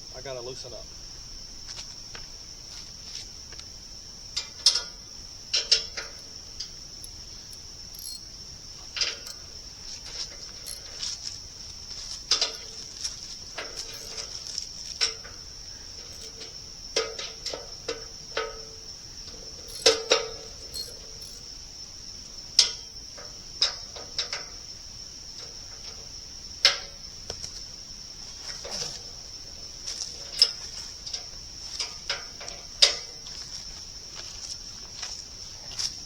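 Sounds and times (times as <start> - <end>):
insect chorus: 0.0 - 36.0
wrench clinking on bolts: 4.4 - 8.3, 9.0 - 11.4, 12.3 - 15.4, 16.0 - 21.5, 30.0 - 33.2.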